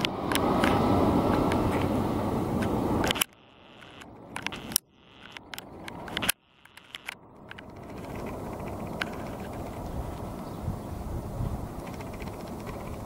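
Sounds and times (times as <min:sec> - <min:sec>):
jet engines rumbling: 0:00.0 - 0:13.0
camera handling clicks: 0:03.0 - 0:08.4.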